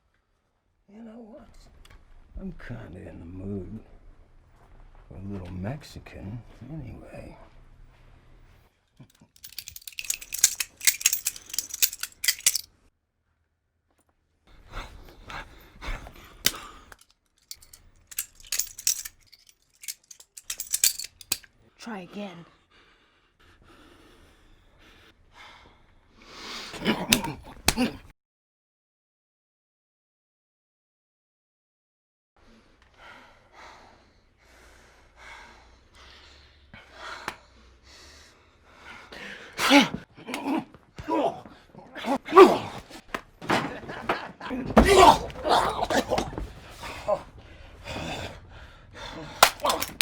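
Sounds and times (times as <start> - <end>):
person breathing hard: 9.4 - 12.6, 32.9 - 39.6
rustling movement: 9.4 - 12.6, 16.9 - 21.5.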